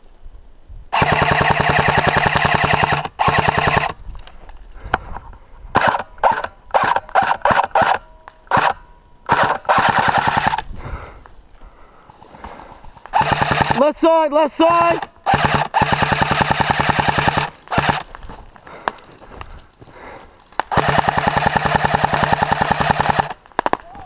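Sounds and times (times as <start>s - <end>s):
airsoft gun bursts: 1.0s - 4.0s, 5.7s - 10.6s, 13.0s - 14.0s, 14.6s - 18.1s, 20.7s - 23.4s.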